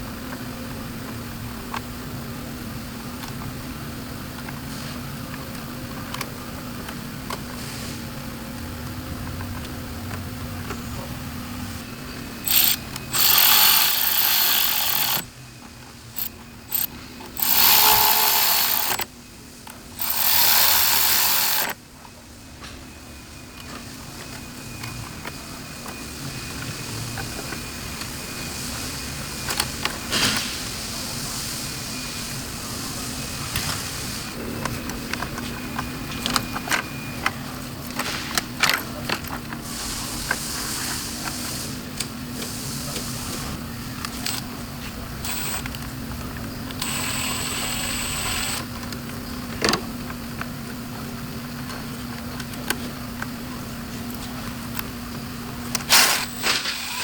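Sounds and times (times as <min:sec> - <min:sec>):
power tool driving fasteners: 0:12.4 - 0:15.3, 0:16.1 - 0:19.1, 0:19.7 - 0:21.8, 0:45.2 - 0:45.9, 0:46.7 - 0:48.7, 0:55.7 - 0:57.0
tool handling clicks: 0:12.4 - 0:15.3, 0:16.2 - 0:21.8.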